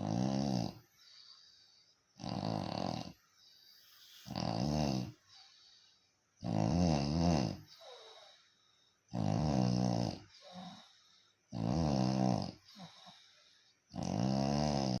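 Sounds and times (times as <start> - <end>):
rasping snores: 0.0 - 0.8, 2.2 - 3.2, 3.8 - 5.2, 6.4 - 8.3, 9.1 - 10.9, 11.5 - 13.2, 13.9 - 15.0.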